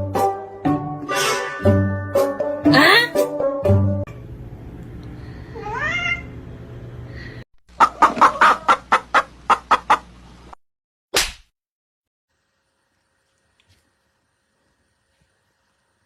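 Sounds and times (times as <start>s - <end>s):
animal calling: 2.7s - 3.1s.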